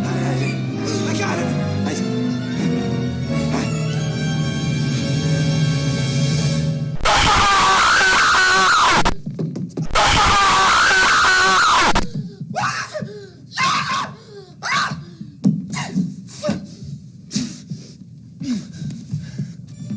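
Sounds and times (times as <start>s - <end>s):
loud distorted scream: 7.0s - 9.1s, 9.9s - 12.1s.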